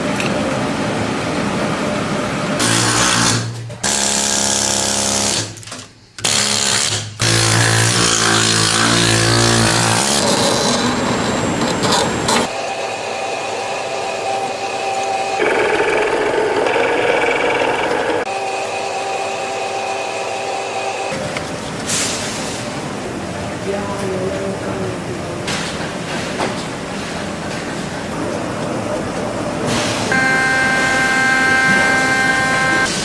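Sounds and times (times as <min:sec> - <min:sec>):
electric motor running: 0:30.1 - 0:32.9
low steady whirring: 0:30.1 - 0:32.9.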